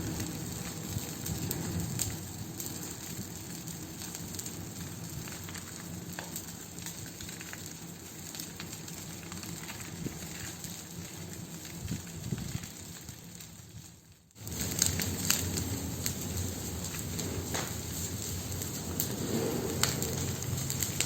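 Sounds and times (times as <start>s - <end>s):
bonfire crackling and hissing: 0.0s - 21.0s.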